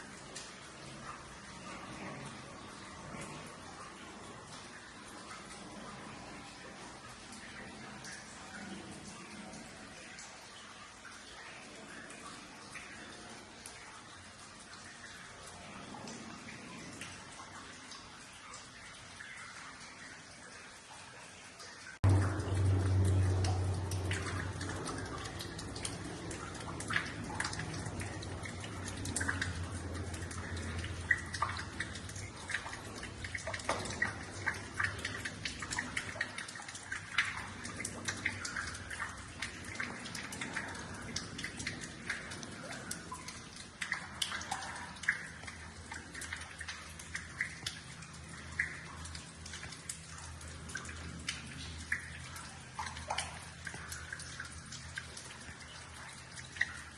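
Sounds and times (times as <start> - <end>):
water trickling and dripping: 0.0 - 56.9
low hum: 22.0 - 36.3.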